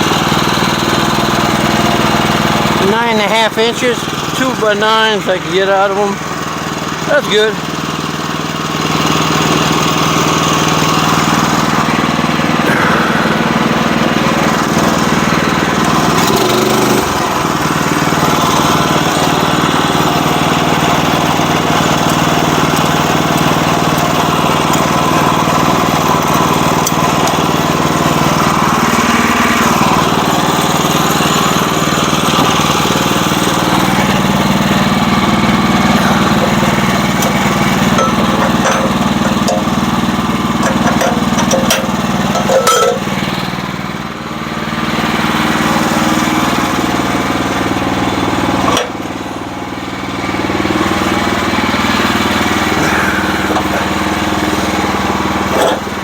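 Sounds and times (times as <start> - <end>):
sawmill engine drone: 0.0 - 56.0
saw cutting log: 12.6 - 43.2, 50.3 - 56.0.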